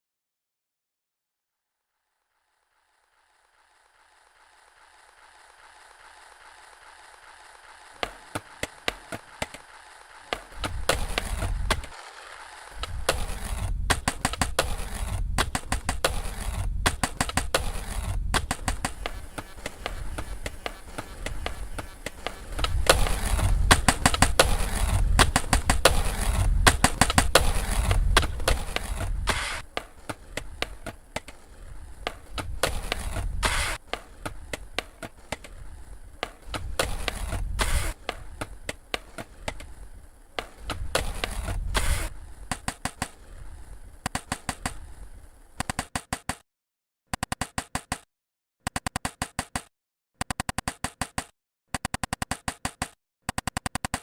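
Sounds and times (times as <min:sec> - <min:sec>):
skateboard wheels rolling on pavement: 0:02.3 - 0:46.3
skateboard clacks: 0:03.0 - 0:46.4, 0:47.1 - 0:48.1, 0:48.7 - 0:54.0
stutter of repeated clicks: 0:16.8 - 0:17.7, 0:45.6 - 0:46.4, 0:47.1 - 0:54.0.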